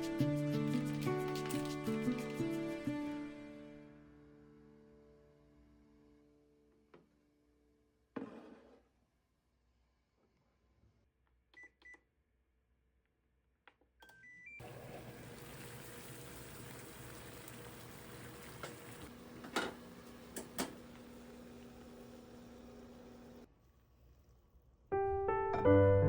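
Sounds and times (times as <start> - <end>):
appliance humming: 14.6 - 23.5.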